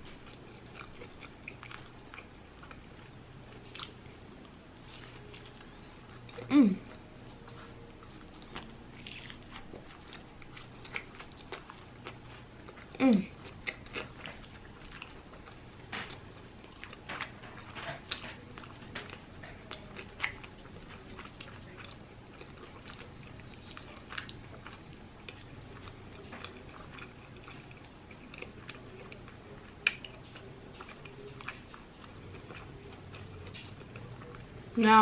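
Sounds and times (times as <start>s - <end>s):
person chewing food: 0.0s - 34.9s.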